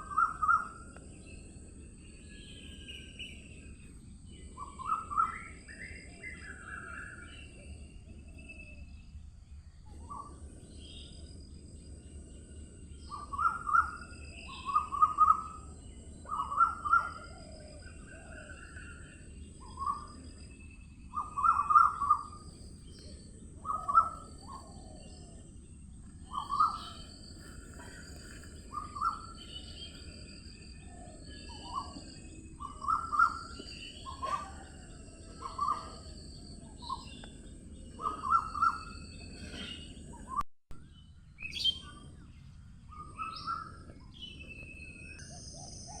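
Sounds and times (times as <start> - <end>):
birds singing and calling: 0.0 - 46.0
high bird chirps: 26.2 - 40.4.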